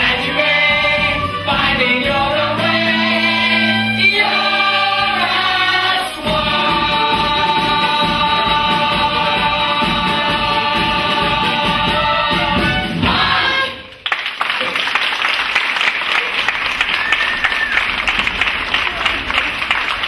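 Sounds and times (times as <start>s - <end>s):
musical backing: 0.0s - 15.4s.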